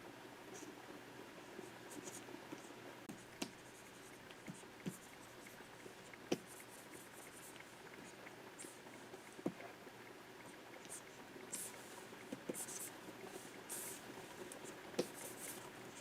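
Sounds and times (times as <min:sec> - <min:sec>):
pen stylus scratching: 0:12.4 - 0:12.9, 0:13.7 - 0:14.0, 0:14.6 - 0:16.0.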